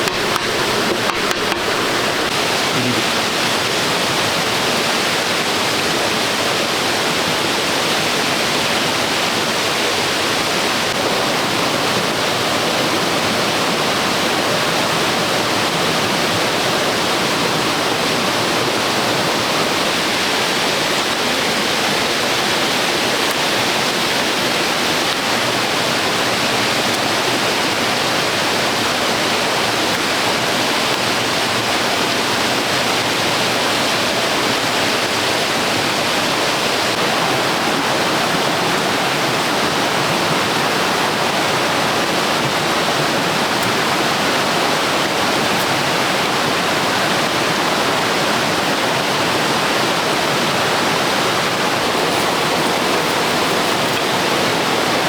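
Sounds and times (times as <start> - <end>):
water rushing: 0.0 - 55.0.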